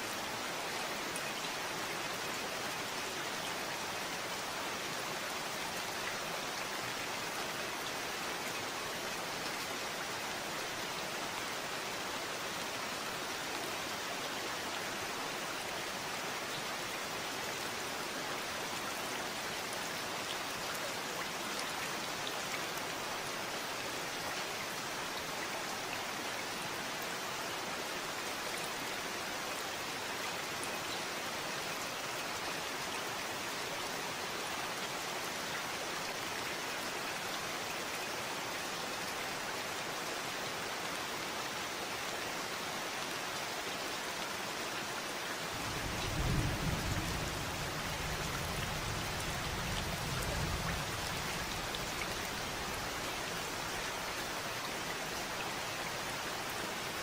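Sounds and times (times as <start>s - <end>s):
steady rain falling: 0.0s - 57.0s
low rumble of thunder: 45.6s - 51.8s.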